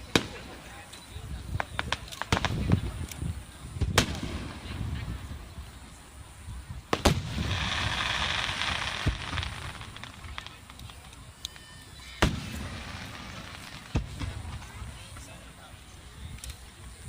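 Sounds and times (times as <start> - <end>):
fireworks booming: 0.0 - 0.8, 1.4 - 3.1, 3.7 - 5.5, 6.8 - 15.4
firework hiss: 0.0 - 17.0.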